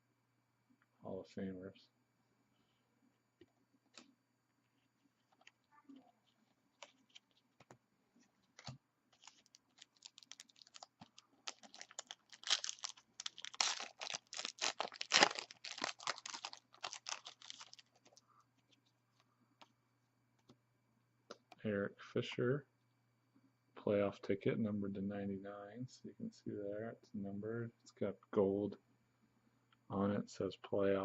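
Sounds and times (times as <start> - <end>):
wrapper tearing and crinkling: 8.6 - 18.2.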